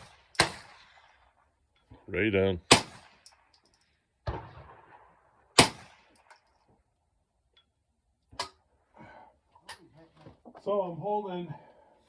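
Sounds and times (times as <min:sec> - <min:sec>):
rifle shots: 0:00.0 - 0:01.2, 0:02.7 - 0:03.5, 0:04.2 - 0:06.3.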